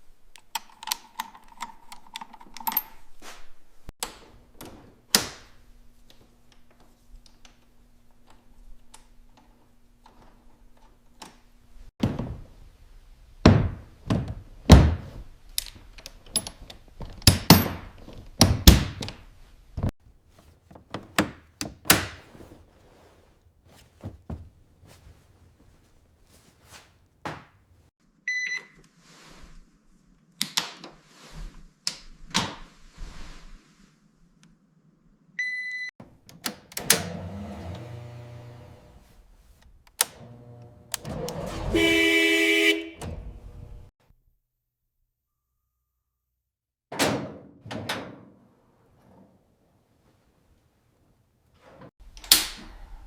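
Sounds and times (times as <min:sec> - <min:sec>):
knocks and thunks: 0:20.2 - 0:27.9.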